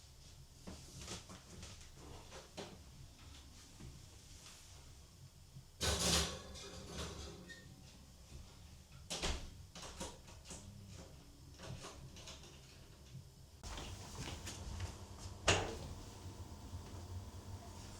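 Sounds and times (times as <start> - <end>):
low background hum: 7.4 - 17.9.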